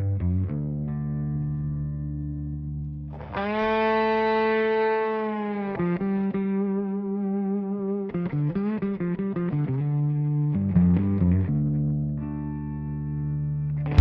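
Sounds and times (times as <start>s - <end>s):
distorted electric guitar: 3.1s - 14.0s.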